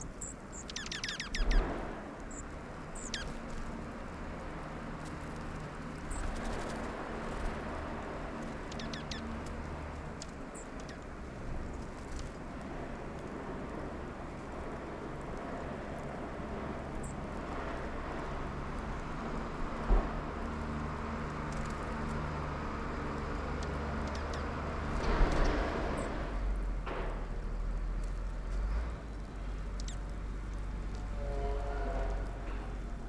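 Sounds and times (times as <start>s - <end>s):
faint bird chirps: 0.0s - 1.6s, 2.3s - 3.4s, 8.7s - 9.3s
distant traffic rumble: 0.0s - 33.0s
vehicle passing: 0.8s - 27.3s.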